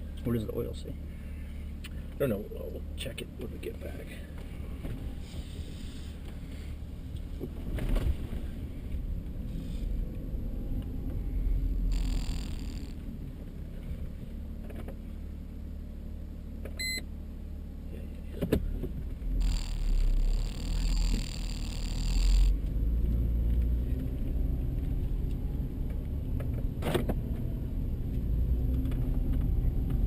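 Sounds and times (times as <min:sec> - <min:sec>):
car engine rumble and road noise: 0:00.0 - 0:30.0
short electronic beep: 0:16.8 - 0:17.1.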